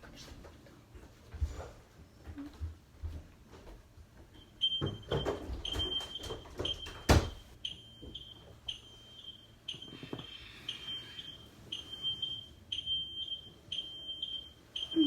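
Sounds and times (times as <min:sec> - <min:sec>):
fire alarm beeping: 0:04.4 - 0:15.0.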